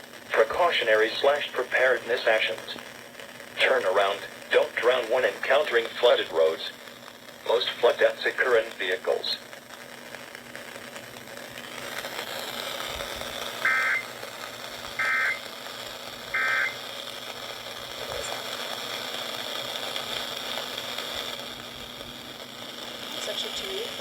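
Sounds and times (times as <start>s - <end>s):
steady radio hiss: 0.0s - 24.0s
digital data bursts from radio: 0.3s - 3.0s, 3.6s - 6.8s, 7.4s - 9.5s, 13.5s - 21.4s, 23.0s - 24.0s.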